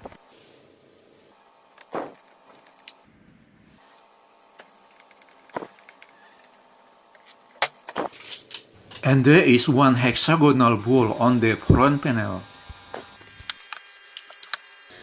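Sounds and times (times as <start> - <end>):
clicks and knocks of small parts: 4.5 - 9.0, 13.4 - 14.6.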